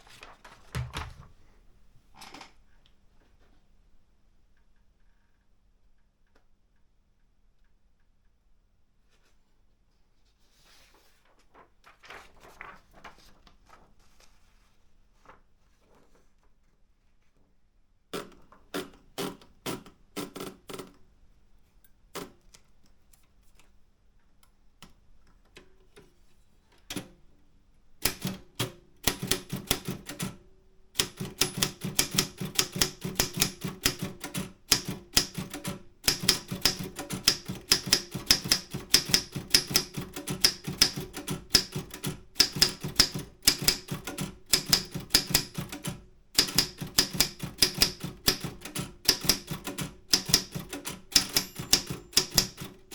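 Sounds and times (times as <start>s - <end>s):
manual typewriter typing: 28.0s - 30.4s, 31.0s - 52.9s.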